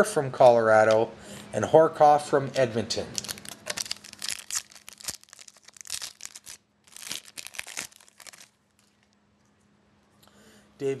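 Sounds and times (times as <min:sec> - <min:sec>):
foil wrapper tearing and crinkling: 0:03.2 - 0:09.1.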